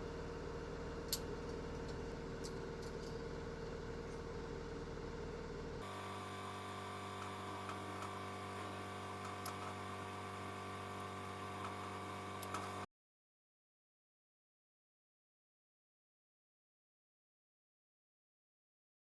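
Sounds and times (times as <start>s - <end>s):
electrical mains hum: 0.0s - 12.9s.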